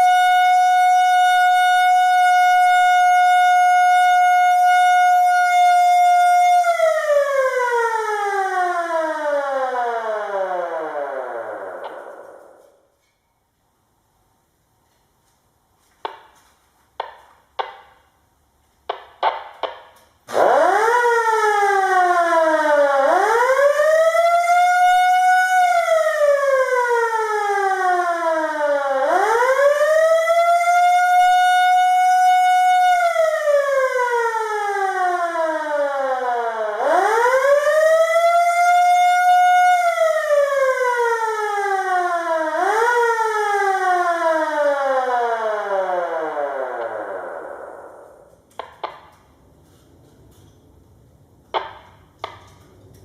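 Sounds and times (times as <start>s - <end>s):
siren wailing: 0.0s - 12.8s, 20.3s - 49.1s.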